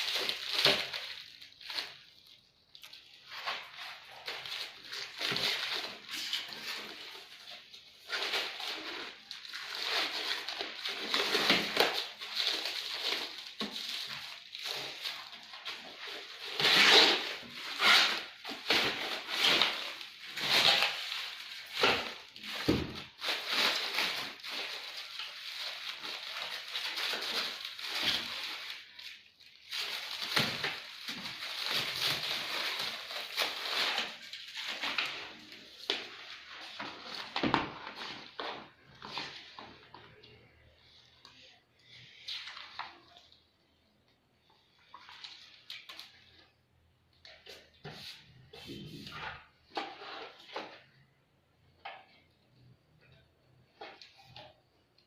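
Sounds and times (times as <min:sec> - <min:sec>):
packaging rustling: 0:00.0 - 0:43.3.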